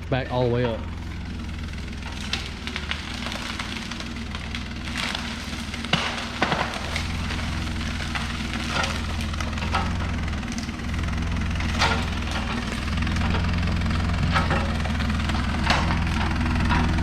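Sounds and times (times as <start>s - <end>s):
diesel engine running: 0.0s - 17.0s
brush crackling and snapping: 1.0s - 17.0s.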